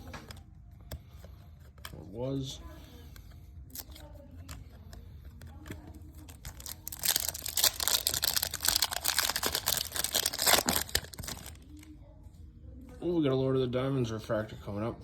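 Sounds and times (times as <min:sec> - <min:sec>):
card pack wrapper crinkling: 0:06.2 - 0:11.8.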